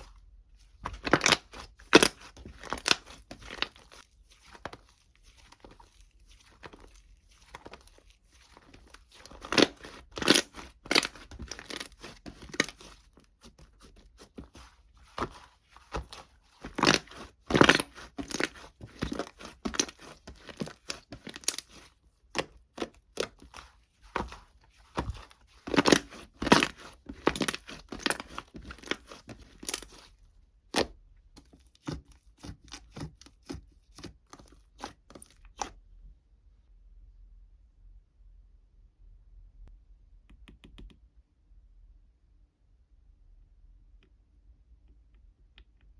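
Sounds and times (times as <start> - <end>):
crinkling and tearing: 0.0 - 30.2.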